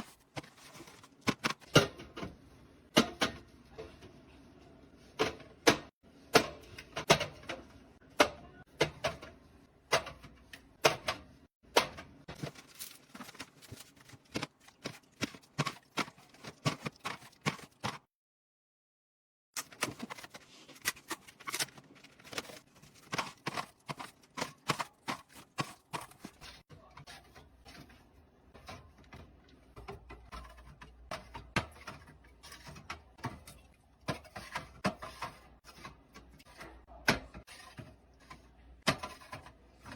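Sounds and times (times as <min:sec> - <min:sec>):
groceries and containers clacking: 0:00.0 - 0:04.2, 0:05.1 - 0:18.1, 0:19.6 - 0:39.9.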